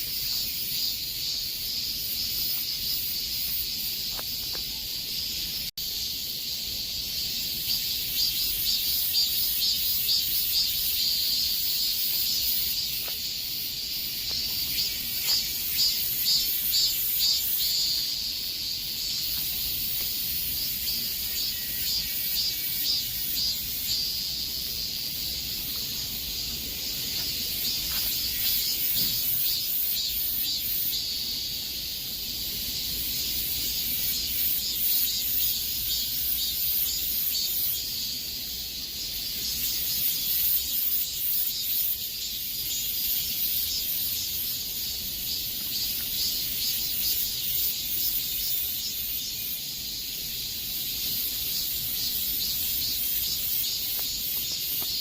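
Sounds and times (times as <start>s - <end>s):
cicadas buzzing: 0.0s - 55.0s.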